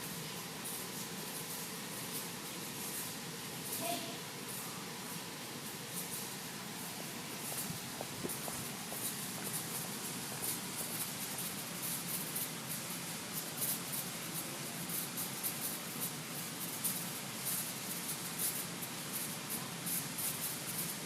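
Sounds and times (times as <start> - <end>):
steady hiss: 0.0 - 21.0
dog nails scratching on floor: 7.4 - 12.6.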